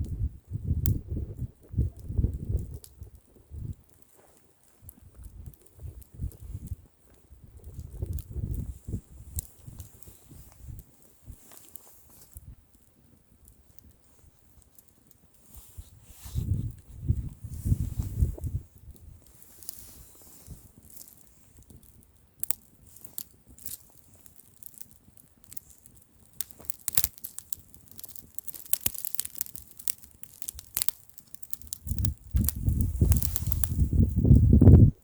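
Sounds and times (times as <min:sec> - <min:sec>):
wind rumble on microphone: 0:00.0 - 0:03.8, 0:04.8 - 0:11.4, 0:12.3 - 0:12.7, 0:15.5 - 0:20.8, 0:31.7 - 0:35.0
wood fire crackling: 0:00.0 - 0:35.0.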